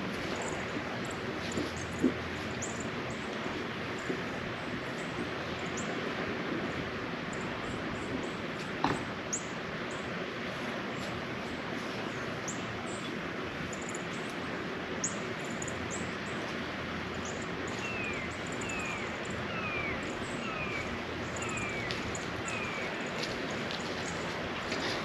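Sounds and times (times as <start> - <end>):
birds chirping: 0.1 - 6.0, 7.3 - 10.1, 10.9 - 25.0.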